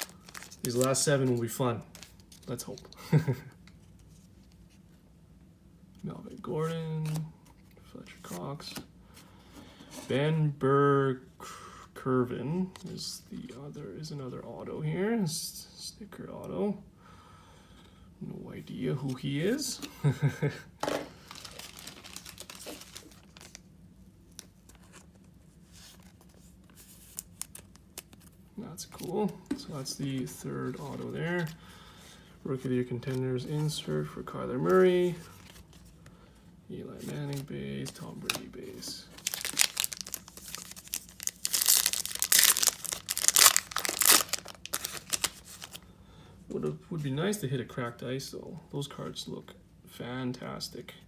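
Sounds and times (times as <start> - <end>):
foil wrapper crinkling and tearing: 0.0 - 2.8, 21.2 - 23.7, 39.0 - 45.8
trading cards rustling: 0.0 - 3.0, 20.8 - 23.7, 24.3 - 36.0, 37.0 - 45.8.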